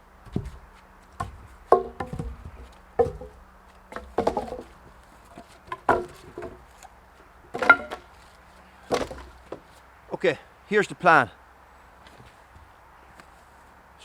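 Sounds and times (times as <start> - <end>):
sharp wooden knocks: 0.2 - 8.3, 8.9 - 9.8.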